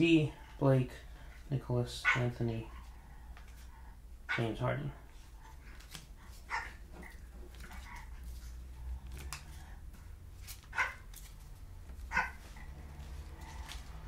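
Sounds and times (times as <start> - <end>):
dog barking: 2.0 - 2.3, 6.5 - 6.8, 10.7 - 11.0, 12.1 - 12.4.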